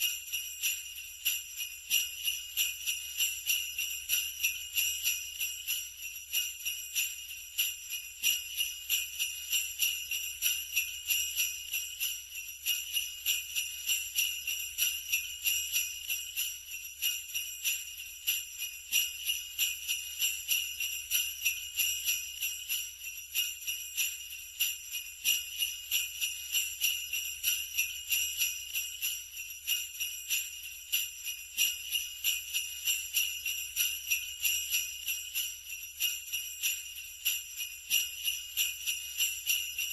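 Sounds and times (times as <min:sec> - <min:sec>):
sleigh bells jingling: 0:00.0 - 0:39.9.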